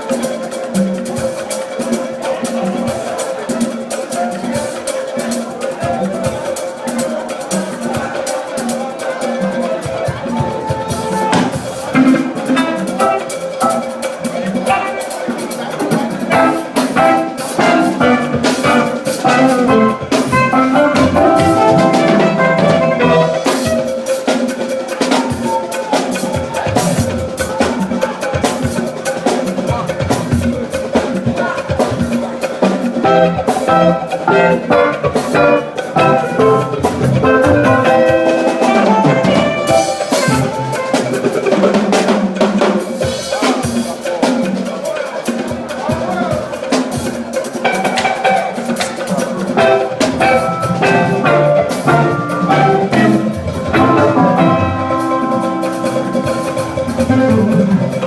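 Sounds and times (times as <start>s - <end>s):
drum kit: 0.0s - 58.0s.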